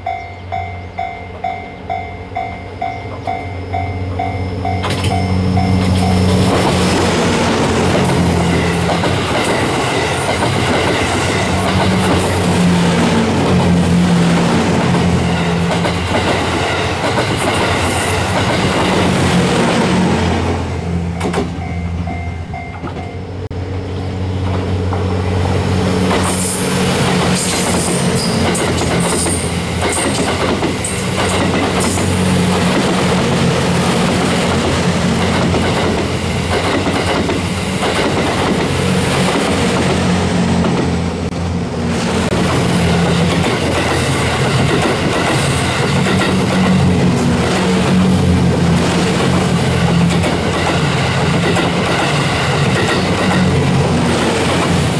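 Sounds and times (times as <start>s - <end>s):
diesel train engine drone: 0.0s - 54.9s
train wheels clacking on rail joints: 4.6s - 19.8s, 21.2s - 21.8s, 26.0s - 33.4s, 34.0s - 40.9s, 42.3s - 54.9s.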